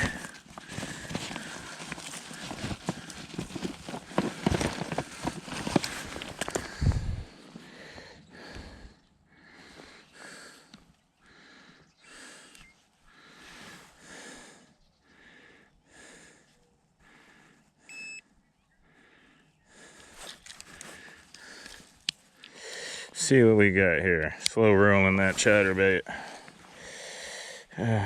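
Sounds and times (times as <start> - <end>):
man breathing heavily: 0.0 - 17.9, 18.8 - 23.2, 25.5 - 28.0
short electronic beep: 17.9 - 18.2.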